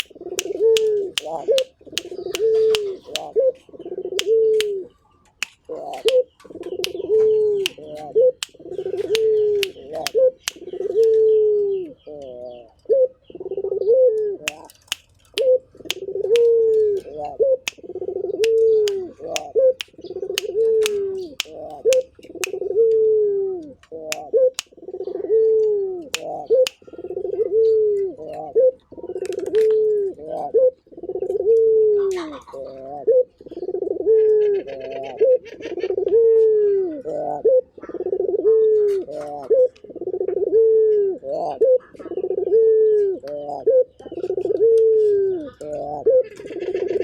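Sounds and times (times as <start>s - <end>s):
sharp clicks: 0.0s - 3.3s, 4.2s - 4.8s, 5.4s - 6.2s, 8.4s - 10.6s, 18.4s - 22.6s
dove cooing: 0.0s - 4.9s, 5.7s - 14.8s, 15.4s - 47.0s
small bird chirping: 0.0s - 22.7s.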